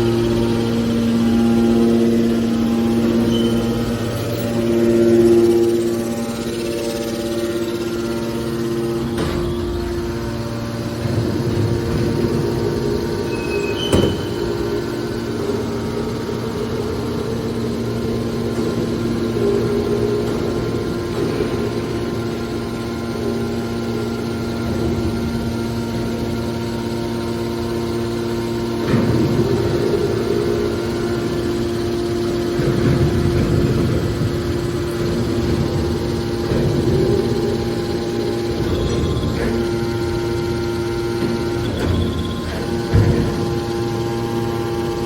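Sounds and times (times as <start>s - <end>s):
hydraulic baler machine hum: 0.0s - 45.0s
heavy bump: 8.1s - 23.6s.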